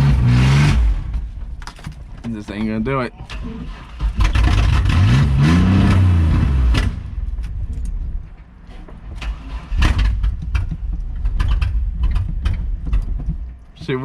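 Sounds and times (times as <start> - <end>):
engine cranking and revving: 0.0 - 1.5, 3.2 - 8.0, 9.1 - 13.2
sharp clicks and knocks: 1.0 - 5.0, 6.7 - 14.0.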